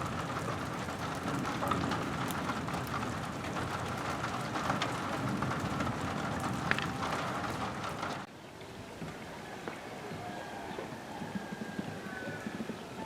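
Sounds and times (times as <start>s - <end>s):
rain hiss: 0.0s - 8.3s
raindrops ticking on surfaces: 0.0s - 13.0s.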